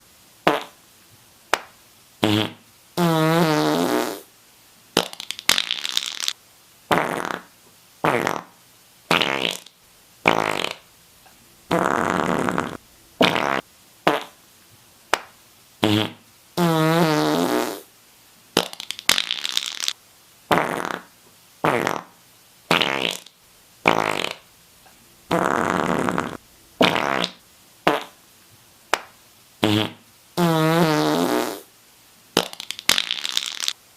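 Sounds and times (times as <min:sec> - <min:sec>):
fart sound effects: 0:00.4 - 0:00.8, 0:02.2 - 0:04.3, 0:05.0 - 0:06.3, 0:06.9 - 0:10.8, 0:11.7 - 0:14.4, 0:15.8 - 0:17.9, 0:18.6 - 0:19.9, 0:20.5 - 0:24.4, 0:25.3 - 0:28.2, 0:29.6 - 0:31.7, 0:32.4 - 0:33.8.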